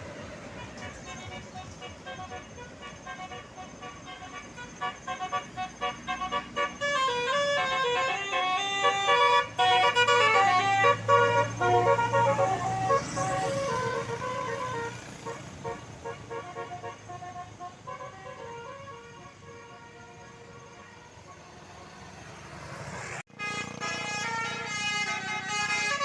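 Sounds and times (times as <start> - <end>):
multi-tone bus horn melody: 0.0 - 26.0.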